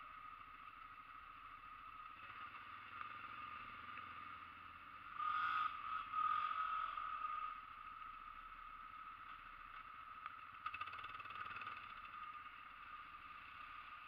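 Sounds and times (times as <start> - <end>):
atv engine revving: 10.6 - 14.0.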